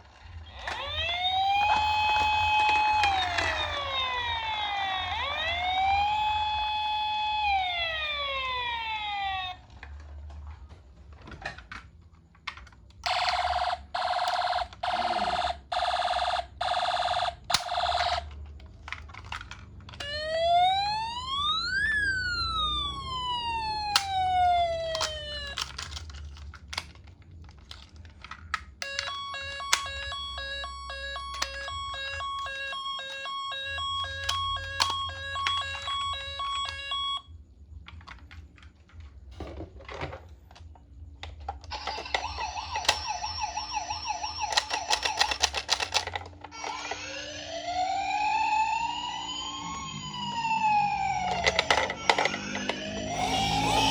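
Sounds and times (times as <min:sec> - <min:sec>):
electronic siren wail: 0:00.4 - 0:09.8, 0:20.0 - 0:26.0, 0:28.8 - 0:37.3, 0:41.8 - 0:46.0, 0:46.6 - 0:53.9.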